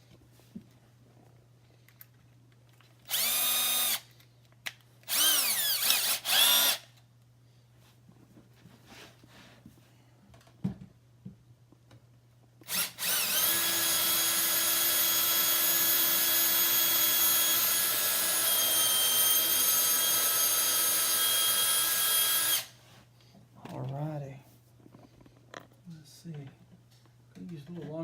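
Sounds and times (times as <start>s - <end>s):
power drill whining: 3.1s - 4.1s, 5.1s - 6.9s, 12.6s - 22.8s.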